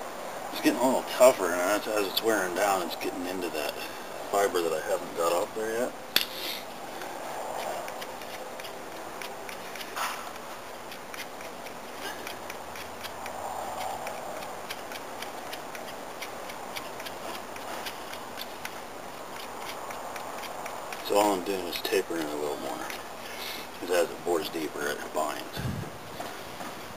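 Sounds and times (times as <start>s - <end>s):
knife scraping wood: 6.2s - 23.9s.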